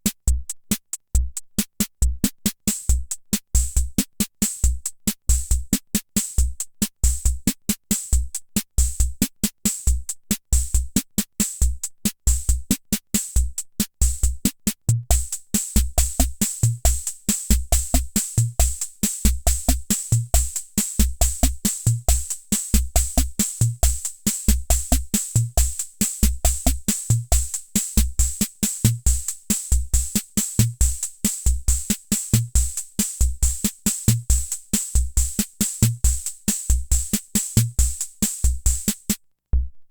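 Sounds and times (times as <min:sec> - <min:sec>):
hissy hi-hat and cymbal ticks: 0:00.0 - 0:39.2
bass drum thumps: 0:39.6 - 0:39.9.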